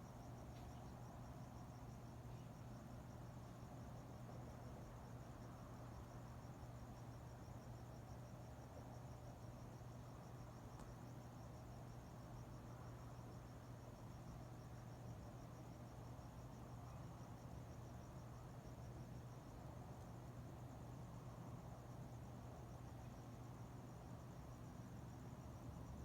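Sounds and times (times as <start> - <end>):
faint crickets chirping: 0.0 - 26.0.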